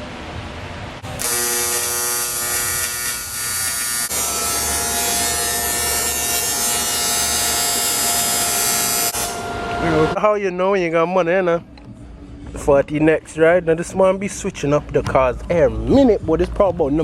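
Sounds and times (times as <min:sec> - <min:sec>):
power tool motor buzzing: 0:01.0 - 0:09.8.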